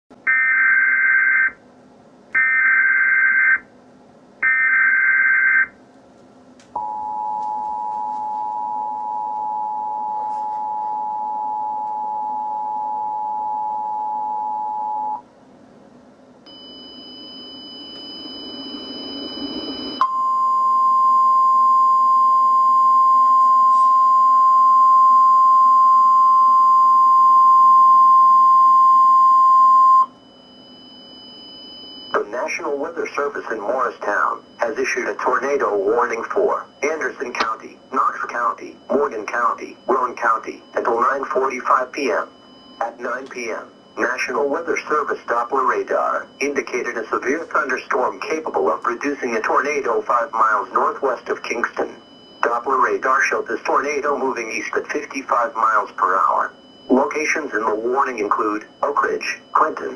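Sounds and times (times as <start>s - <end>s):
steady high tone: 6.8s - 15.2s, 16.5s - 59.9s
two-tone attention signal: 16.5s - 32.3s
warbling data tones: 16.6s - 20.0s.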